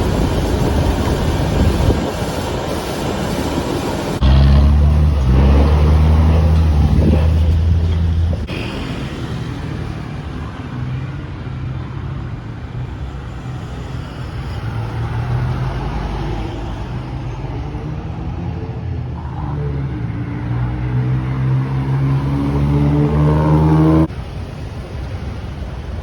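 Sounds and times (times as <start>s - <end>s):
general noise: 0.0s - 26.0s
engine humming: 4.0s - 8.5s, 16.9s - 24.1s.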